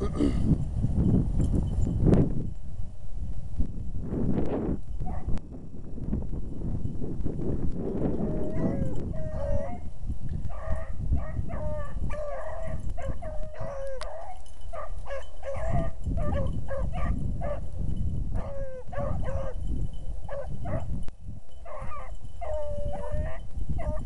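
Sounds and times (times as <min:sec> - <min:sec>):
hounds baying and barking: 0:05.0 - 0:05.4, 0:08.1 - 0:21.0, 0:21.6 - 0:24.0.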